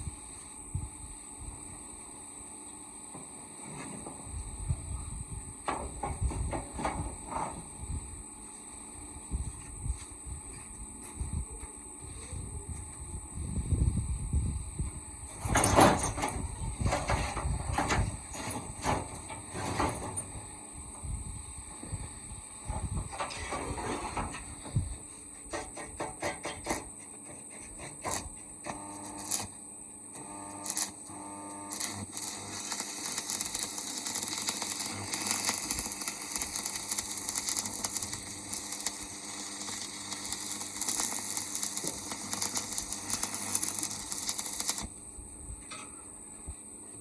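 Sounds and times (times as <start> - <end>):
arc welding crackling: 14.0 - 45.4.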